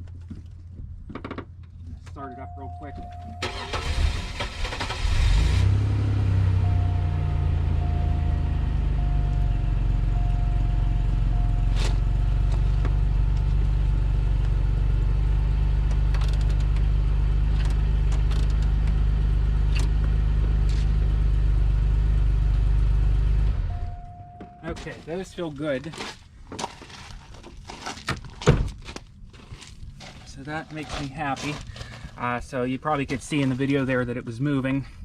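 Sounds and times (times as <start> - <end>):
car engine starting and idling: 2.1 - 25.6
steady high tone: 2.2 - 3.5, 6.0 - 12.5, 23.5 - 25.4.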